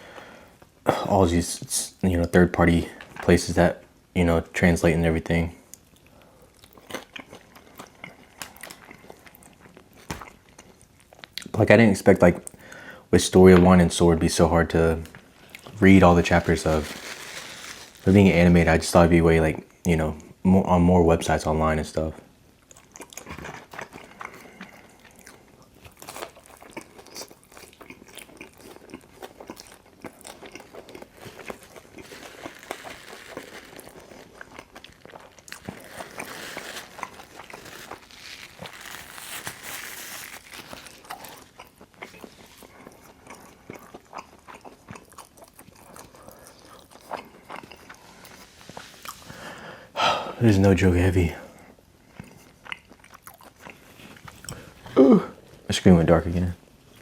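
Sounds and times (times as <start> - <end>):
close chewing and biting: 5.8 - 11.5, 22.6 - 48.5, 52.0 - 54.9.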